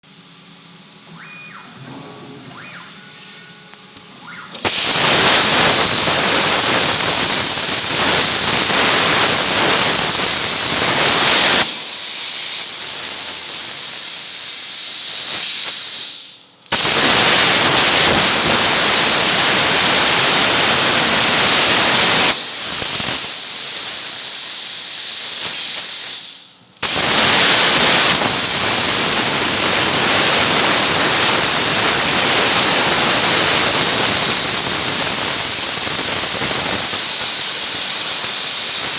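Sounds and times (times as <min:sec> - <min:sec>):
cutting torch hissing: 0:04.3 - 0:38.9.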